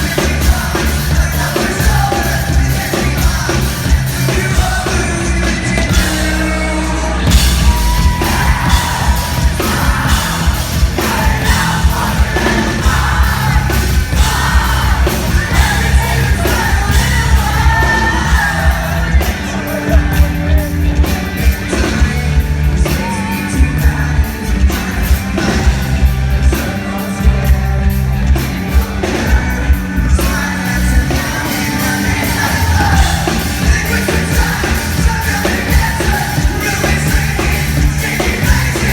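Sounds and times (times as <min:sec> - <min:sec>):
drums: 0:00.0 - 0:38.9
loud distorted live rock band: 0:00.0 - 0:38.9
person singing: 0:00.0 - 0:38.9.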